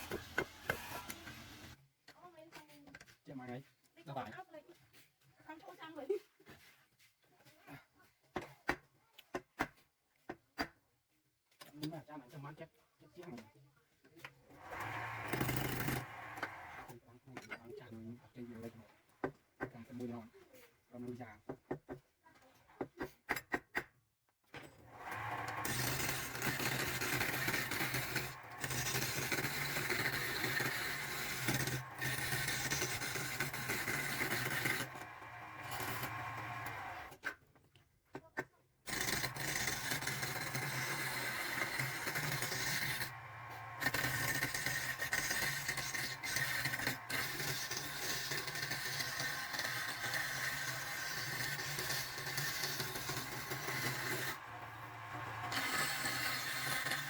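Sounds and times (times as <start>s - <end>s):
power tool humming on wood: 0.0s - 1.8s, 14.6s - 16.9s, 25.0s - 37.2s, 38.9s - 57.0s.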